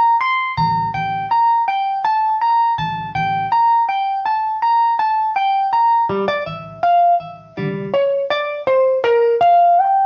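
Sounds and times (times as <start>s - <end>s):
low guitar chord: 0.0s - 1.6s, 5.5s - 10.0s
clean guitar single notes: 0.0s - 10.0s.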